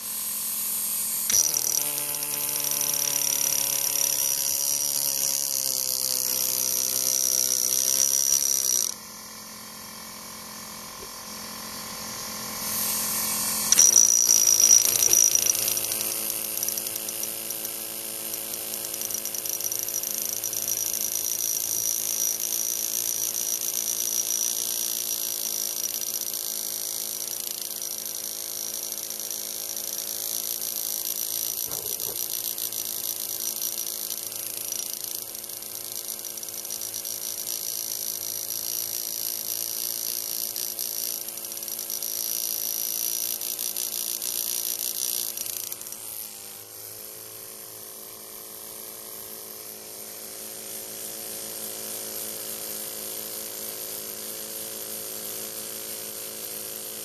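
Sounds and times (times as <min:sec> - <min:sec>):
power tool buzzing: 0:00.0 - 0:57.0.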